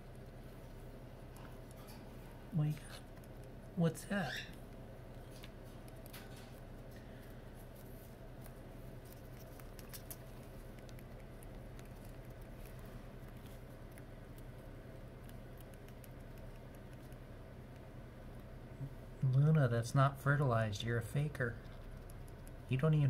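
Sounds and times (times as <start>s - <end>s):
steady low hum: 0.0s - 23.0s.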